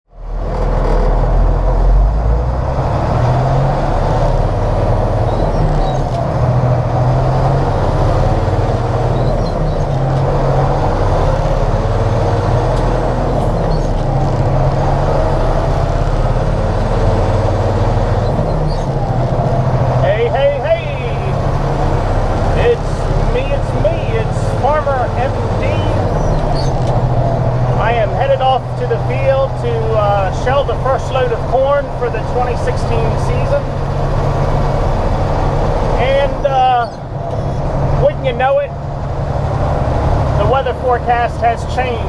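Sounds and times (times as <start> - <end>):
combine harvester running: 0.2 - 42.0.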